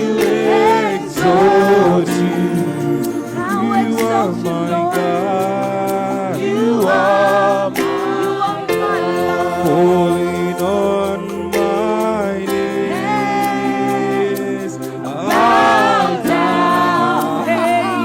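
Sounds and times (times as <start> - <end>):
worship music with singing: 0.0 - 18.0.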